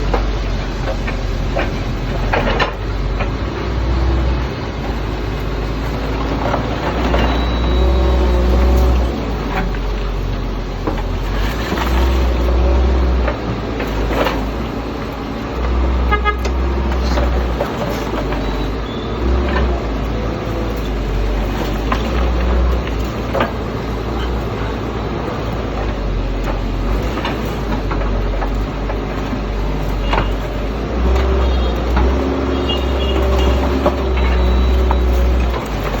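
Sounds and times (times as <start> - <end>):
excavator diesel engine: 0.0 - 36.0.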